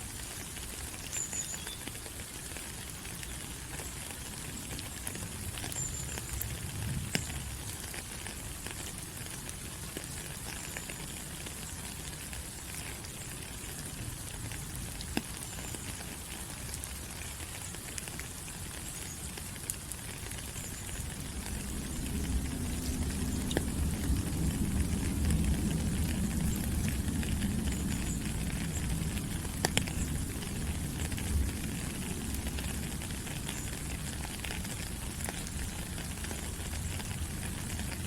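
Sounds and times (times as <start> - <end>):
rain on foliage: 0.0 - 38.0.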